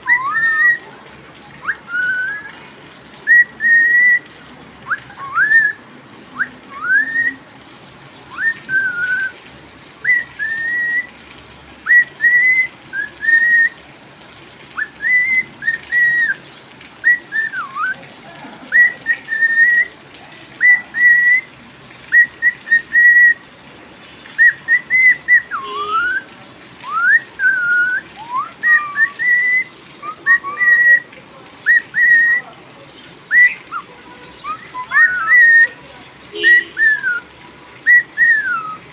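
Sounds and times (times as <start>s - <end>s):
cockatiel whistling: 0.0s - 0.8s, 1.6s - 2.5s, 4.9s - 5.8s, 6.7s - 7.4s, 8.3s - 9.3s, 10.0s - 11.1s, 17.0s - 18.0s, 22.1s - 23.4s, 24.4s - 26.2s, 26.8s - 31.1s, 31.7s - 32.4s, 33.3s - 33.8s, 34.4s - 35.8s, 36.4s - 37.2s, 37.9s - 38.8s.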